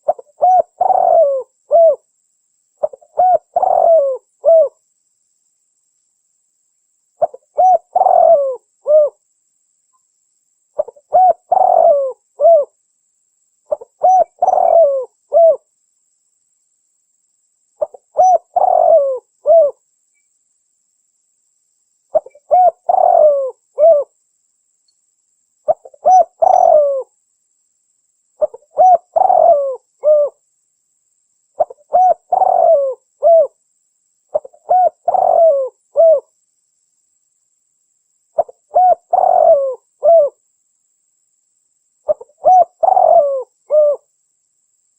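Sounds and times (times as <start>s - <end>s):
dove cooing: 0.0s - 2.0s, 2.8s - 4.8s, 7.2s - 9.2s, 10.8s - 12.7s, 13.7s - 15.7s, 17.8s - 19.8s, 22.1s - 24.1s, 25.7s - 27.1s, 28.4s - 30.4s, 31.6s - 33.6s, 34.3s - 36.3s, 38.4s - 40.4s, 42.1s - 44.1s.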